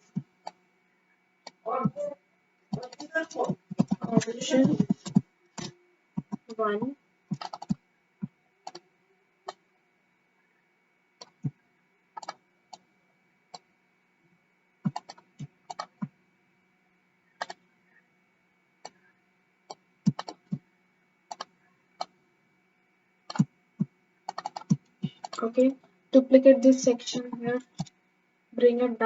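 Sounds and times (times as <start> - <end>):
keyboard keystrokes: 7.3 - 7.8, 12.2 - 12.4, 14.9 - 16.0, 19.7 - 20.4, 24.3 - 25.7
mouse clicks: 24.3 - 25.5.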